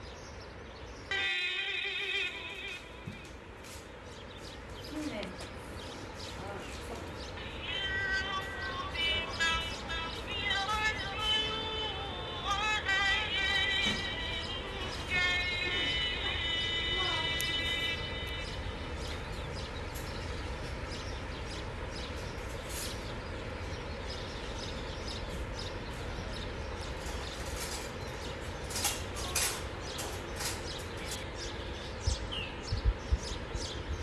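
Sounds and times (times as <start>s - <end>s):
wind rumble on microphone: 17.2s - 34.0s.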